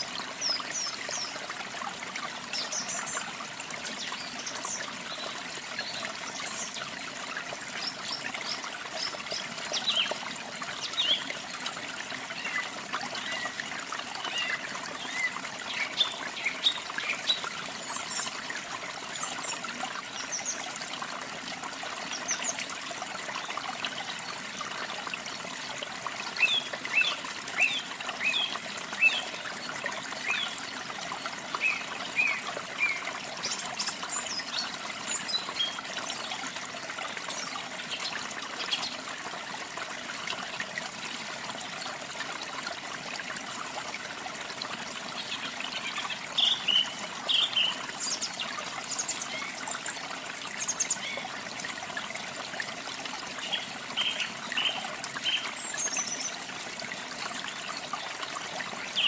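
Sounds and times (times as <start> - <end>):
water trickling: 0.0 - 59.0.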